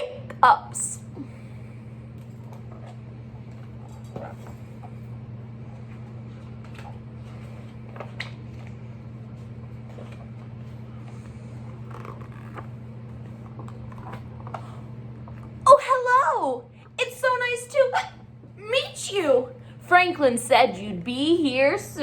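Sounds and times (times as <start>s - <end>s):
steady low hum: 0.0s - 22.0s
faint clicks and creaks: 11.6s - 12.7s.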